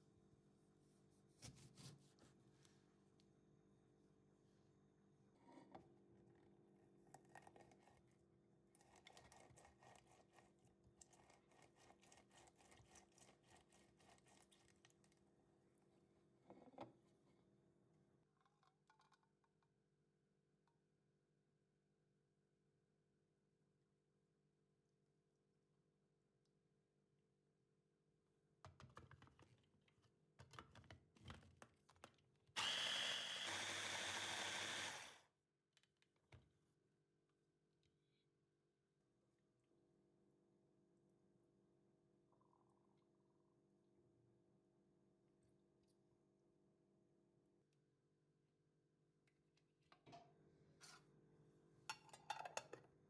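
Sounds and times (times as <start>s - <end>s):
electric blender whining: 32.6s - 35.2s
kitchen items clicking and knocking: 51.9s - 52.8s.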